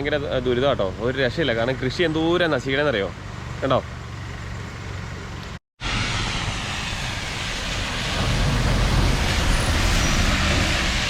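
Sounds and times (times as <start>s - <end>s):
low engine rumble: 0.0s - 11.0s
water rushing and spraying: 5.8s - 11.0s.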